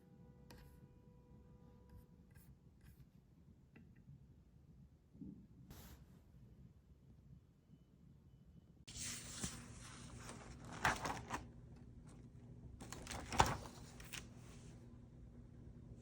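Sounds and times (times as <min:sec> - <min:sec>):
steady low hum: 0:08.9 - 0:16.0.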